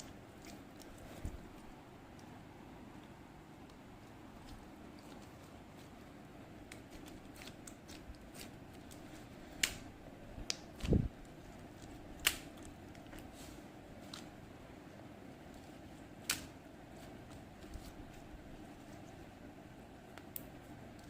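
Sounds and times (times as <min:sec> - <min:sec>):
faint steady hum: 0:00.0 - 0:21.0
slime squishing with sticky clicks: 0:06.6 - 0:13.2.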